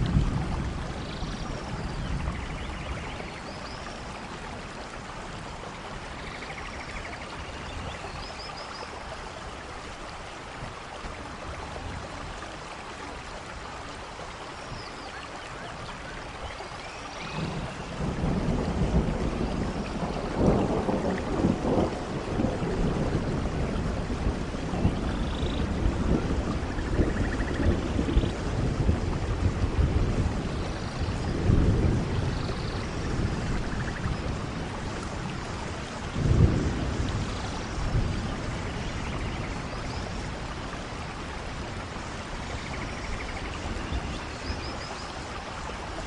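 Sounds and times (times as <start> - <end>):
thunder rumbling: 0.0 - 3.0, 17.2 - 44.3
steady rain: 0.0 - 46.0.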